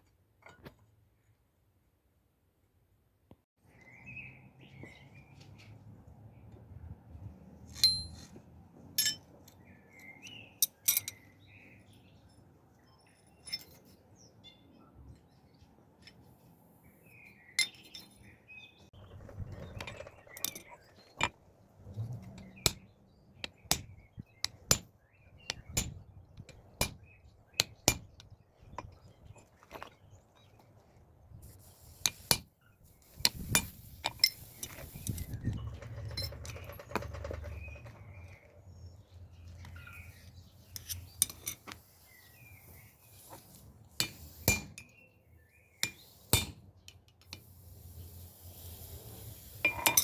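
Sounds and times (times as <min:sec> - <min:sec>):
birds chirping: 0:16.8 - 0:31.4, 0:32.6 - 0:43.6.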